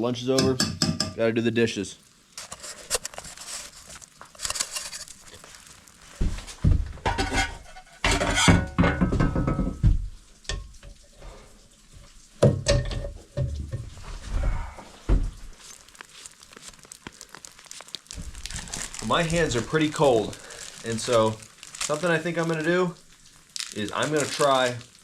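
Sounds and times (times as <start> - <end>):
cookware clinking and scraping: 4.4 - 5.2, 7.0 - 9.8
scrubbing: 13.9 - 25.0.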